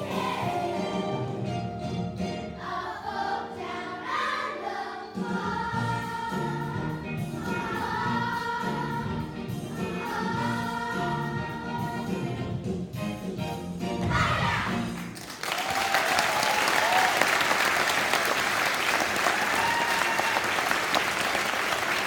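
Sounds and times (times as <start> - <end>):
children's chorus singing: 0.0 - 1.2, 2.5 - 12.3.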